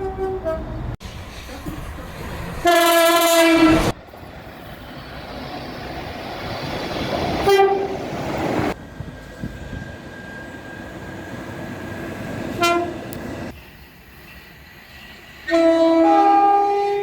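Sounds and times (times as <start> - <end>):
loud train horn blast: 0.0 - 0.8, 2.6 - 4.0, 7.4 - 8.0, 12.5 - 13.1, 15.5 - 17.0
two-tone train horn: 0.0 - 0.8, 2.6 - 3.9, 7.4 - 8.0, 12.5 - 13.1, 15.5 - 17.0
rumbling train: 0.0 - 17.0.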